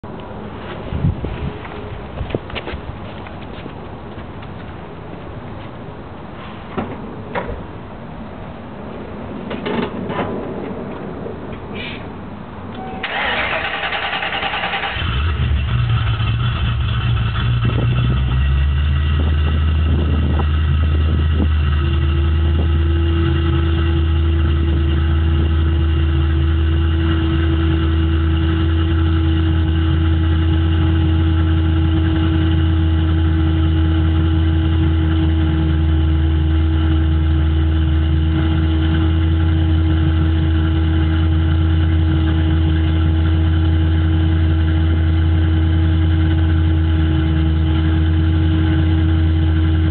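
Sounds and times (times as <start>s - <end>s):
car engine idling: 10.9s - 49.9s.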